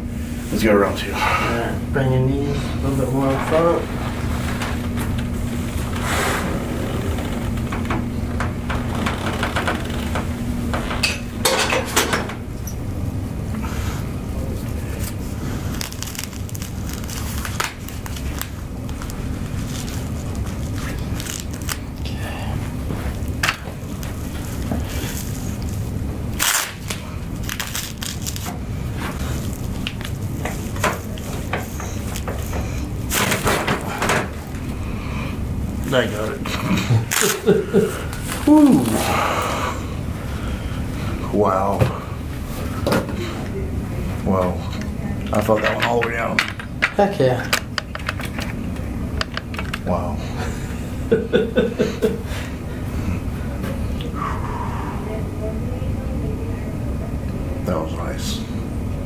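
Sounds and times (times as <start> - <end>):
steady low hum: 0.0 - 59.0
back cracking: 4.3 - 10.7, 36.5 - 39.8.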